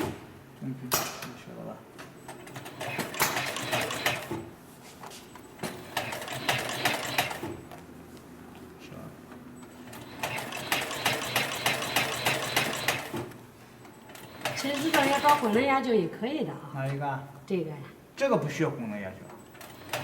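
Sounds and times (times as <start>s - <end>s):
sewing machine stitching: 2.4s - 4.5s, 5.7s - 7.6s, 9.9s - 13.3s, 14.2s - 15.6s, 19.6s - 20.0s.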